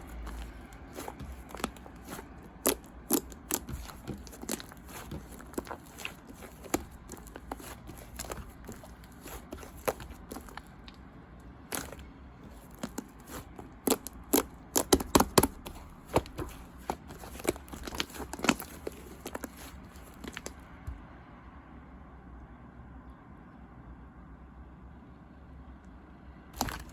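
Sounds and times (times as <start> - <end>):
slime crackling and popping: 0.0 - 11.0, 11.7 - 20.6, 26.6 - 26.9.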